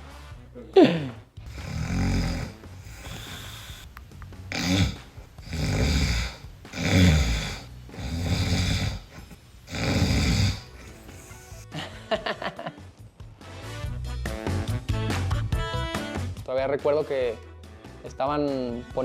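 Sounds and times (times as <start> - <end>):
person snoring heavily: 0.8 - 3.9, 4.5 - 11.5.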